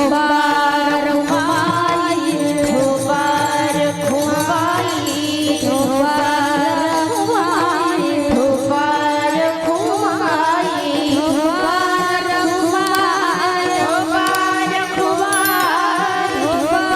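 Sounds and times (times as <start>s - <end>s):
woman singing: 0.0s - 16.9s
small hand cymbals: 12.7s - 16.7s.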